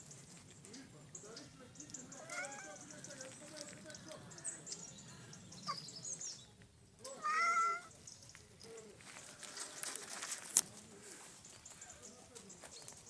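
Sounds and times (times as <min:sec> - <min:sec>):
light rustling: 0:00.0 - 0:04.3, 0:07.9 - 0:13.0
cat meowing: 0:02.2 - 0:02.8, 0:07.1 - 0:07.9.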